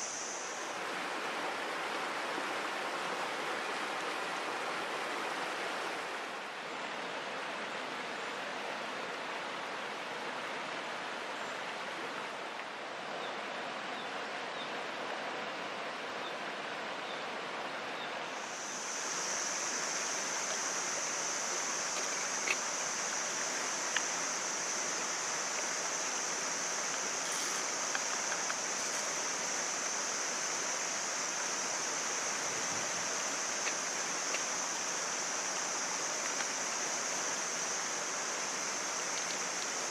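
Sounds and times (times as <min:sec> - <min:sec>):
high-pitched shrill hiss: 0:00.0 - 0:01.3, 0:18.3 - 0:39.9
mountain stream rushing: 0:00.0 - 0:39.9
faint clicks: 0:26.8 - 0:29.2, 0:35.5 - 0:36.8, 0:39.1 - 0:39.8.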